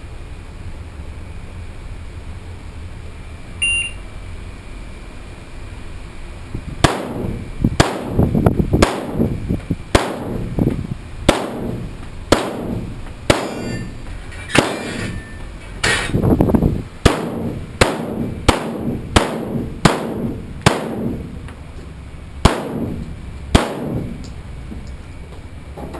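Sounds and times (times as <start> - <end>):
short electronic beep: 3.6 - 4.0
shotgun shots with ringing tail: 6.8 - 8.2, 9.9 - 10.5, 11.3 - 14.0, 17.0 - 21.3, 22.4 - 23.0, 23.6 - 24.2.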